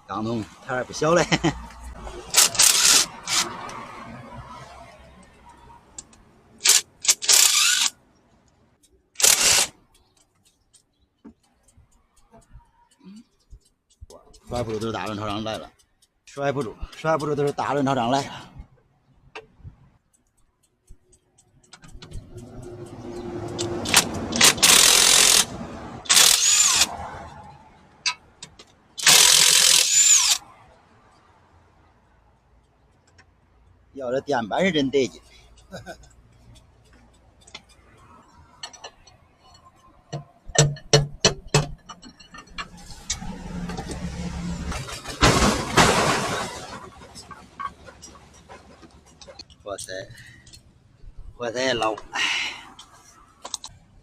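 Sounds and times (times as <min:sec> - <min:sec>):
electric impact wrench whirring: 0:02.3 - 0:03.5, 0:06.6 - 0:07.9, 0:09.2 - 0:09.7, 0:23.8 - 0:25.5, 0:26.1 - 0:26.9, 0:29.0 - 0:30.4
sharp metallic knocks: 0:36.9 - 0:49.4.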